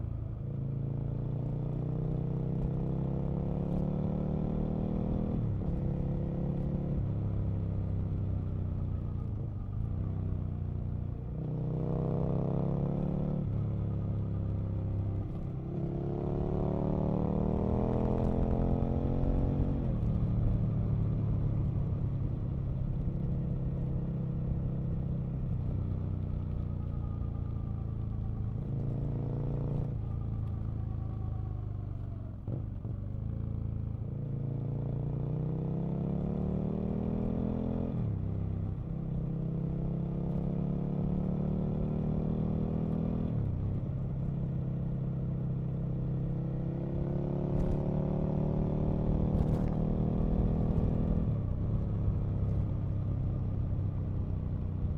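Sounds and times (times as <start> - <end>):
motorcycle engine revving: 39.3 - 52.7.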